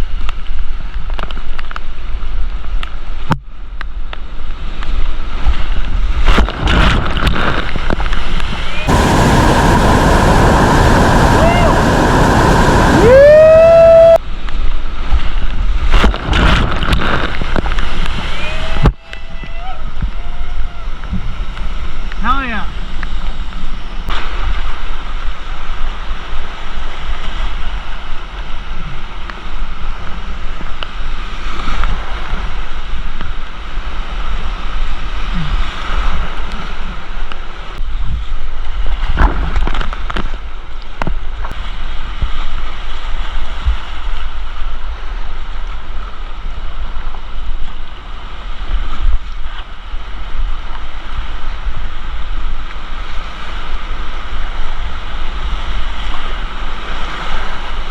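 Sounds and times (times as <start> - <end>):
wind rumbling on microphone: 0.0 - 57.9
whitewater rushing over rocks: 6.3 - 14.4.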